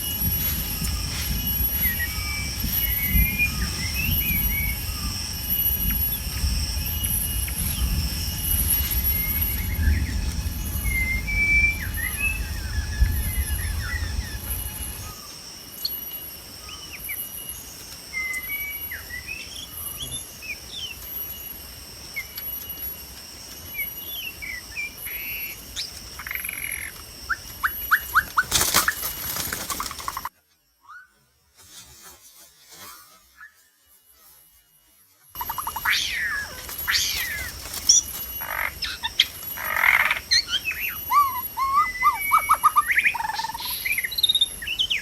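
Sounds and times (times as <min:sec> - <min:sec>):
low wind rumble: 0:00.0 - 0:15.3
pulsing insect drone: 0:00.0 - 0:45.0
wild birds chirping: 0:01.0 - 0:31.2, 0:35.4 - 0:45.0.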